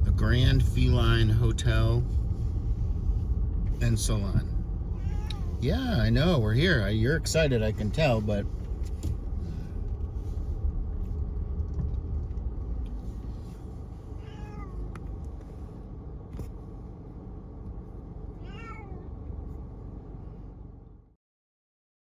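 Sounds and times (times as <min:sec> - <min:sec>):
low rumble of car: 0:00.0 - 0:21.2
cat meowing: 0:04.9 - 0:05.6, 0:14.2 - 0:14.9, 0:18.4 - 0:19.1.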